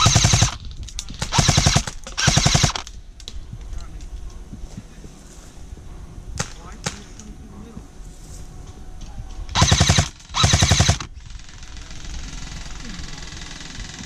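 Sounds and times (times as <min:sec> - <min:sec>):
airsoft rifle full-auto bursts: 0:00.0 - 0:00.6, 0:01.2 - 0:02.8, 0:09.6 - 0:14.0.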